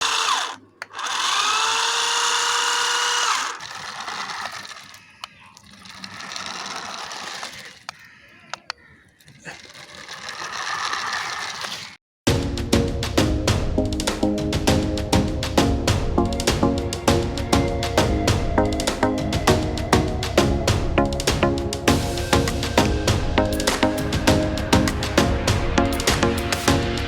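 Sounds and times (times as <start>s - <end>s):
small electric motor whirring: 0.0s - 7.9s, 9.5s - 12.0s
sharp clicks: 0.0s - 12.0s
music with drums: 12.3s - 27.0s.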